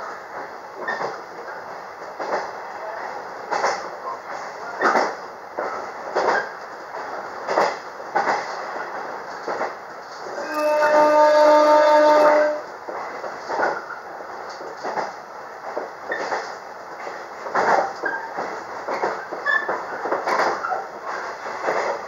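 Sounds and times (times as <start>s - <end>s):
train wheels clacking on rail joints: 0.3s - 2.6s, 3.4s - 22.0s
train horn: 10.4s - 12.7s.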